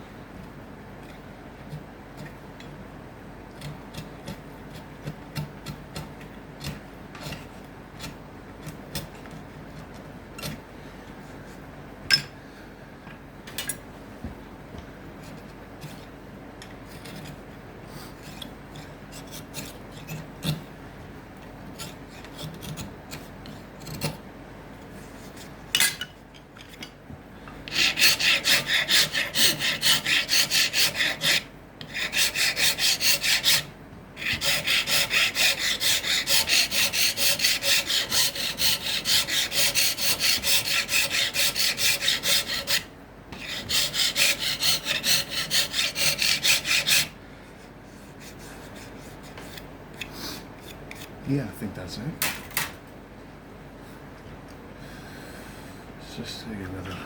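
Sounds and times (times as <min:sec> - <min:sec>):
hand file scraping wood: 0:03.6 - 0:08.2, 0:21.7 - 0:24.2, 0:27.7 - 0:47.2, 0:47.9 - 0:51.2
filing strokes: 0:27.7 - 0:47.2, 0:47.9 - 0:49.7.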